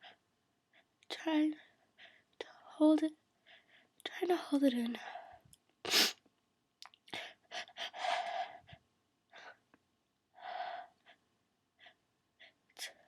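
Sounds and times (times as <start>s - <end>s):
person gasping before sneeze: 5.9s - 6.2s.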